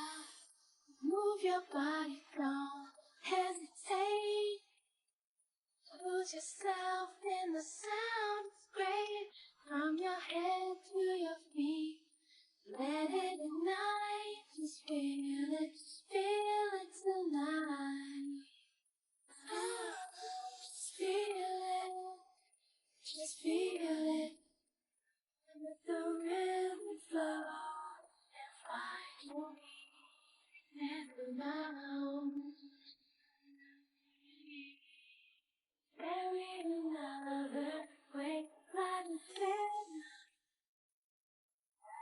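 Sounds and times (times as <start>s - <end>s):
child singing: 0.0s - 4.6s, 5.9s - 12.0s, 12.7s - 18.5s, 19.4s - 22.4s, 23.0s - 24.4s, 25.5s - 33.0s, 36.0s - 40.2s.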